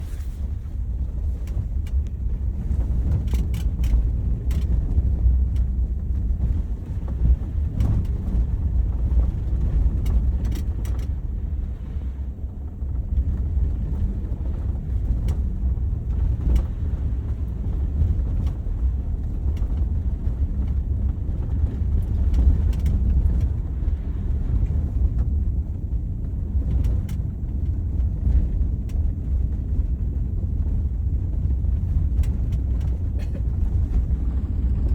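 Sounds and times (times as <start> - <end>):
vehicle knocks and rattles: 0.0 - 11.4
road rumble: 0.0 - 34.9.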